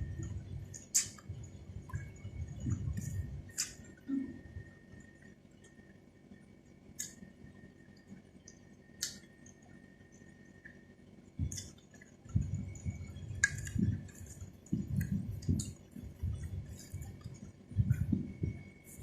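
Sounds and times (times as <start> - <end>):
mouth clicks and wet smacks: 0.7 - 4.1, 7.0 - 7.2, 8.0 - 9.7, 11.4 - 18.2
chewing and rustling: 11.4 - 19.0.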